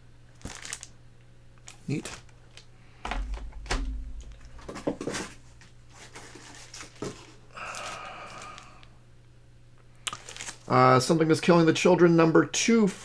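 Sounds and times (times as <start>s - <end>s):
packing rustling: 0.4s - 0.9s, 1.6s - 8.9s, 10.1s - 10.7s
hard plastic clacks: 3.1s - 5.4s
dull low thump: 3.1s - 5.8s.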